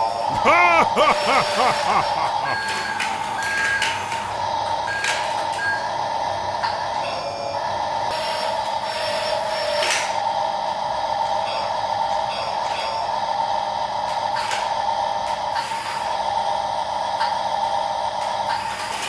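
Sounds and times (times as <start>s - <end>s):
toy electric motor whining: 7.1s - 10.2s, 18.4s - 19.0s.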